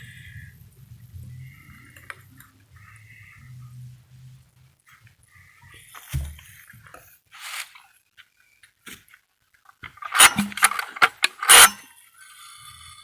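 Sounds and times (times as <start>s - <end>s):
chainsaw starter cord rasping: 9.9s - 11.9s
metallic clatter and scraping: 9.9s - 11.9s.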